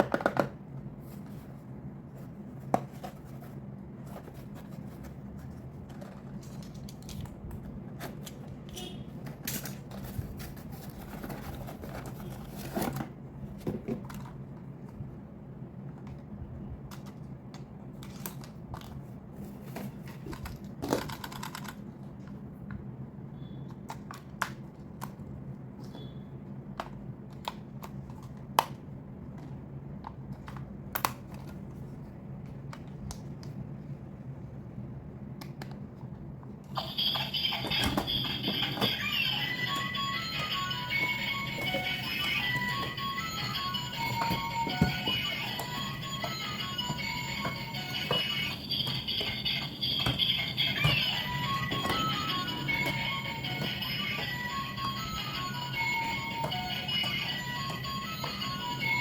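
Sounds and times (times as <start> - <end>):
plastic toys clicking and tapping: 0.0 - 0.6, 20.1 - 21.9
steady low hum: 25.2 - 59.0.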